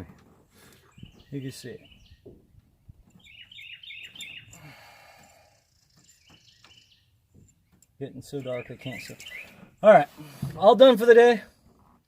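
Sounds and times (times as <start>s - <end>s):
bird chirping: 0.6s - 10.0s.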